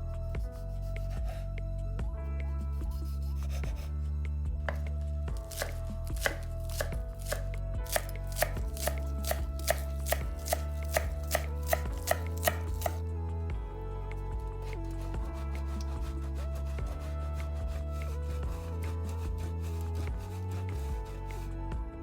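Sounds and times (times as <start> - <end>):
soft background music: 0.0 - 22.0
knife chopping on cutting board: 4.7 - 13.0.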